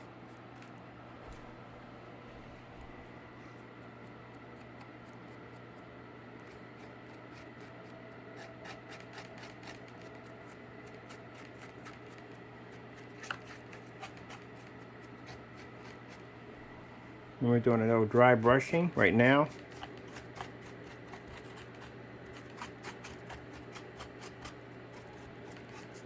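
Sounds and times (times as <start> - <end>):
steady low hum: 0.0 - 26.0
paintbrush scratching on cardboard: 6.4 - 16.3, 18.8 - 26.0.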